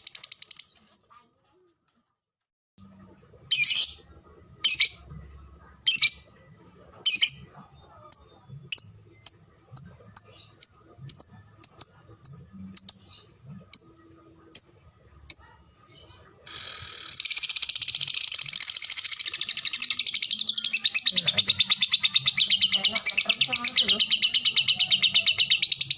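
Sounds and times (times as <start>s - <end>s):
lovebird chirping: 3.5s - 5.2s, 7.0s - 25.9s.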